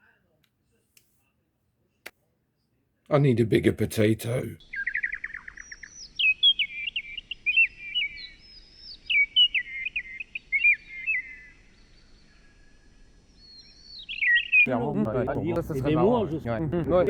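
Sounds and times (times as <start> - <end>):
songbird singing: 4.6 - 17.0.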